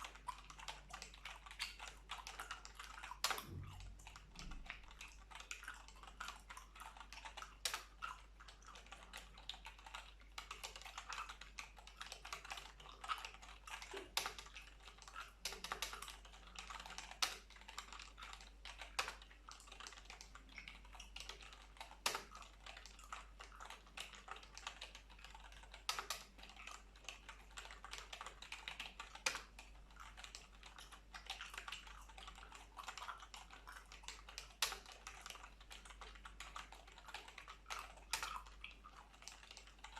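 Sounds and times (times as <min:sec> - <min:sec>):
computer keyboard typing: 0:00.0 - 0:39.9.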